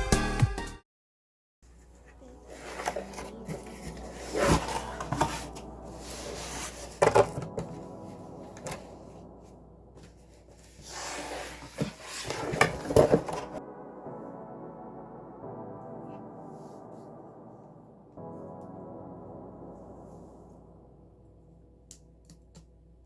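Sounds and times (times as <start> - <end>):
faint background music: 1.7 - 23.0
handling knocks and scrapes: 2.5 - 7.9, 10.0 - 13.6.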